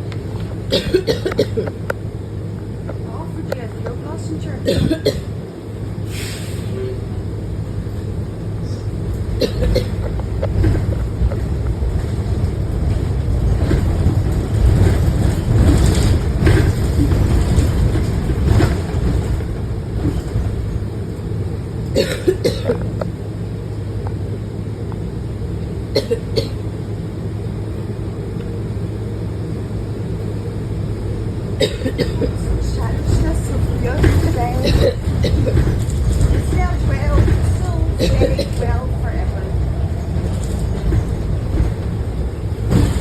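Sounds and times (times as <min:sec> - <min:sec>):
bus engine rumble: 0:00.0 - 0:43.0
person coughing: 0:00.7 - 0:01.7, 0:04.7 - 0:05.3, 0:09.4 - 0:10.0, 0:22.0 - 0:22.8, 0:26.0 - 0:26.6, 0:31.6 - 0:32.3, 0:38.0 - 0:38.6.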